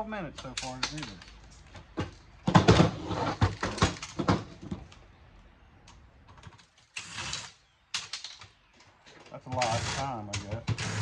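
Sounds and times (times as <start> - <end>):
small parts clicking and clattering: 0.3 - 1.9, 6.2 - 11.0.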